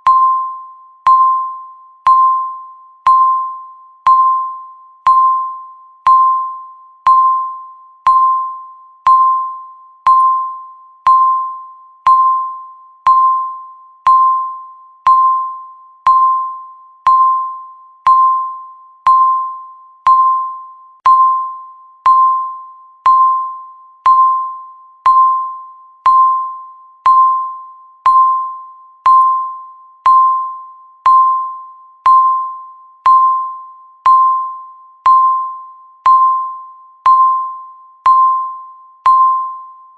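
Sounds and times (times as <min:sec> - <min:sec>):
countdown timer beeping: 0:00.0 - 0:39.9.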